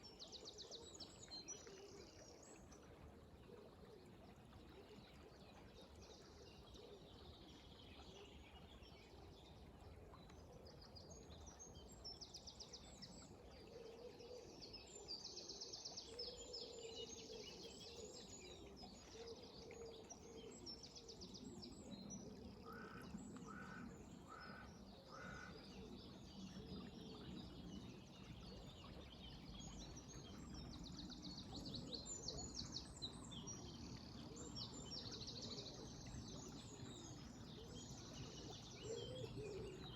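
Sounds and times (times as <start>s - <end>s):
river water: 0.0s - 39.9s
songbirds singing: 14.4s - 39.9s.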